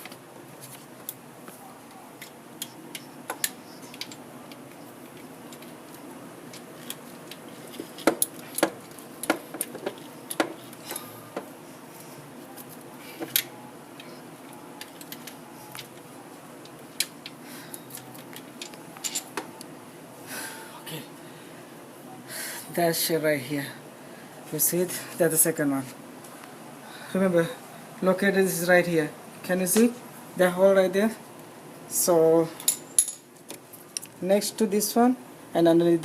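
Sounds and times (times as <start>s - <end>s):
low background hum: 0.0s - 36.0s
metal tools clinking: 2.2s - 11.2s, 17.9s - 19.4s, 32.6s - 33.3s.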